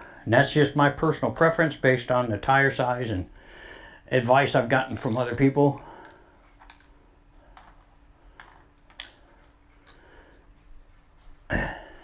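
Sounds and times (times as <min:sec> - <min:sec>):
clicks from small parts and tools: 0:07.6 - 0:09.2, 0:09.8 - 0:10.1.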